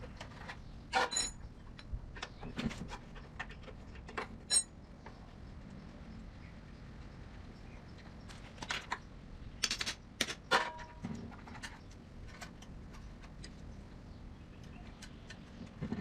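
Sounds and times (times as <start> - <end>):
metal tools clinking: 0.9 - 1.4, 4.5 - 4.7.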